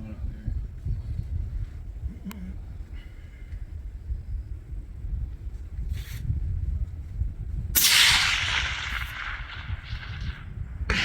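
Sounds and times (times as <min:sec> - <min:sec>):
wind rumble on microphone: 0:00.0 - 0:11.0
rifle shot echoing: 0:07.8 - 0:11.0.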